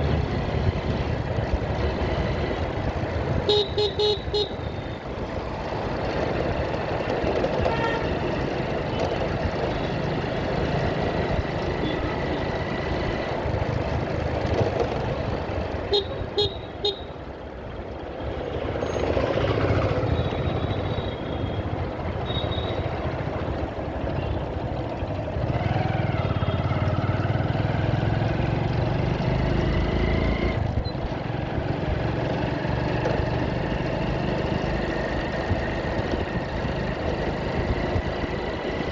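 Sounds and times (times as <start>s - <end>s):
motorcycle engine and road noise: 0.0s - 38.9s
horn beeps: 20.1s - 22.9s.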